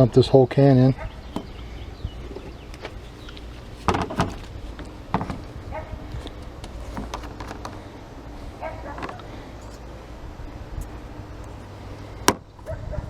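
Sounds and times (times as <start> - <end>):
steady low hum: 0.0 - 13.0
clicks and knocks of handling: 2.3 - 5.5, 6.1 - 7.8, 8.9 - 9.8.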